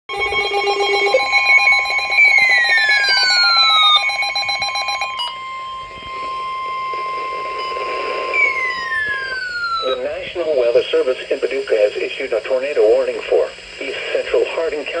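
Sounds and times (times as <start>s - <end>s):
steady electronic alert tone: 0.1s - 10.2s
pulsing multi-tone electronic alarm: 0.1s - 10.6s.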